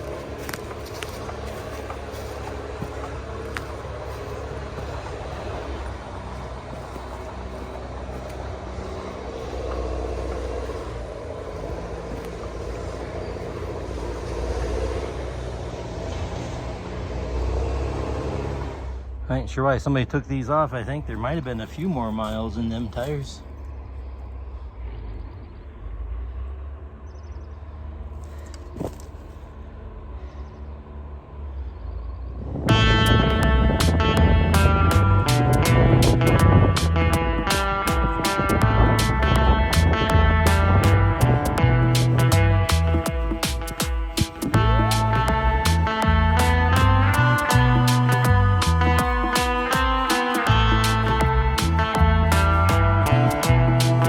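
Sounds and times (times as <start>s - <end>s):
steady low rumble: 0.0s - 17.1s, 28.2s - 54.0s
vehicle engine humming: 0.0s - 54.0s.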